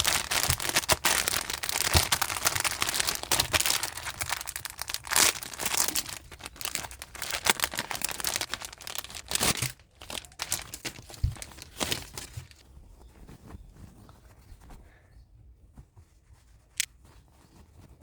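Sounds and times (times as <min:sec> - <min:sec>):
plastic packaging crinkling: 0:00.0 - 0:12.6.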